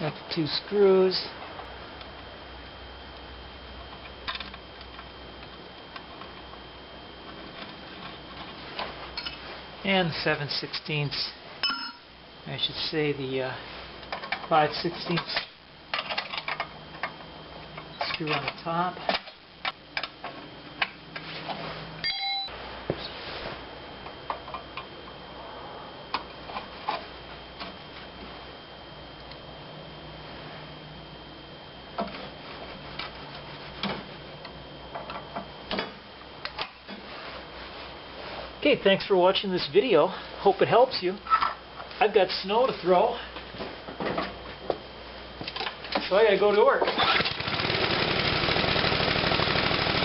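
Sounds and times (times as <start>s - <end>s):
faint steady hum: 0.0s - 50.0s
tools tapping on metal: 11.6s - 12.0s
short beep: 22.0s - 22.5s.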